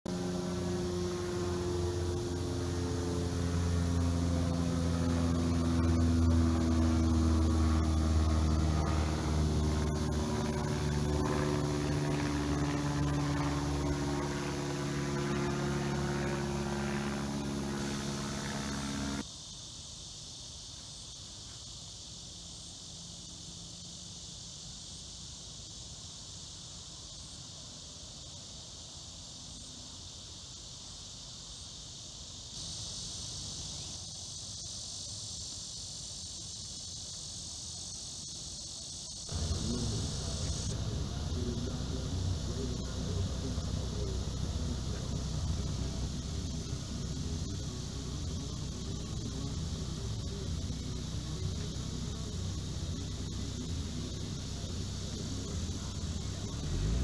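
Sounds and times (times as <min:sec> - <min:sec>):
engine running: 0:00.0 - 0:19.2, 0:39.3 - 0:57.0
insects chirring: 0:00.1 - 0:57.0.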